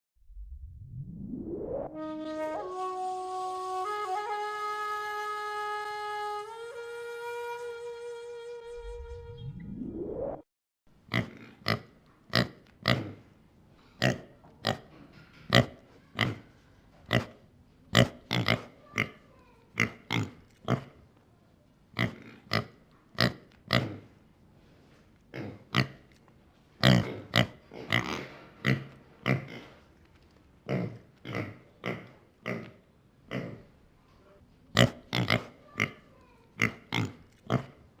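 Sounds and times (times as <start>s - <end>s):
brief rising tone: 0.2s - 3.3s, 7.5s - 10.5s
pig snorting: 11.1s - 13.2s, 22.0s - 24.1s, 26.8s - 29.8s, 34.8s - 37.8s.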